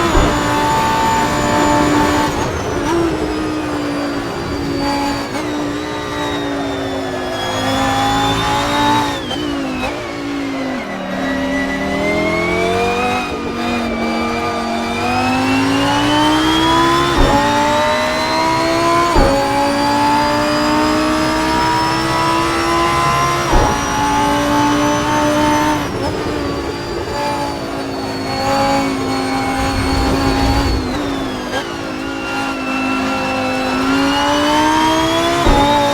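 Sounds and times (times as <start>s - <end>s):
sports car engine at high revs: 0.0s - 35.9s
gearshift crack: 13.3s - 26.5s, 28.8s - 33.1s, 34.8s - 35.9s.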